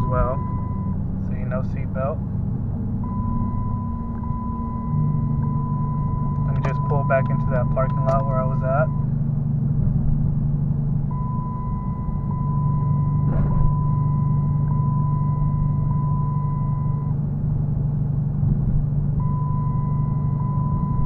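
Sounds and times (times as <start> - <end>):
seat-belt warning chime beeping: 0.0 - 2.1, 3.0 - 9.2, 11.1 - 17.2, 19.2 - 21.0
low hum of moving car: 0.0 - 21.0.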